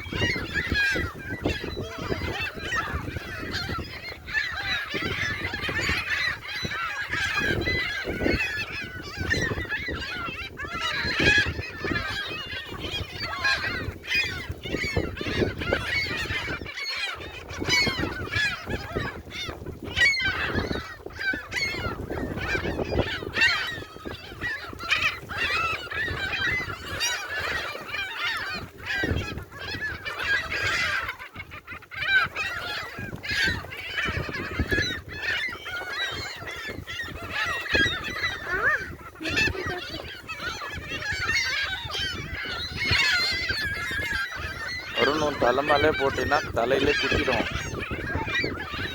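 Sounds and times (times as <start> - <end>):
gulls squawking: 0.0 - 48.9.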